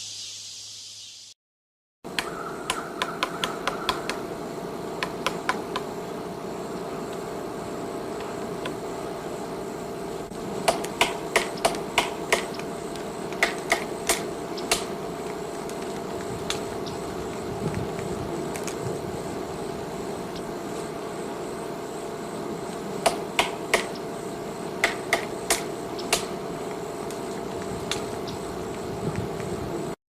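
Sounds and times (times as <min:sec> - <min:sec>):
steady background hiss: 0:00.0 - 0:01.4, 0:02.1 - 0:30.0
woodpecker pecking at wood: 0:02.2 - 0:04.2, 0:05.0 - 0:05.9.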